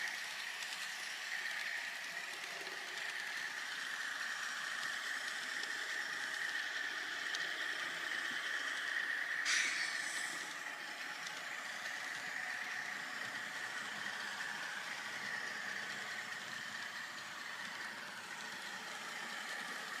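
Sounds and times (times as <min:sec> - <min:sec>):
air brake hiss: 0:09.4 - 0:10.5.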